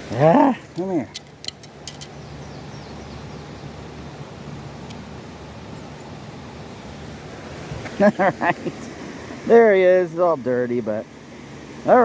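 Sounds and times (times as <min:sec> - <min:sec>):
creek water rushing: 0:00.0 - 0:12.0
sharp clicks: 0:00.7 - 0:02.1
bird chirps: 0:01.7 - 0:03.8.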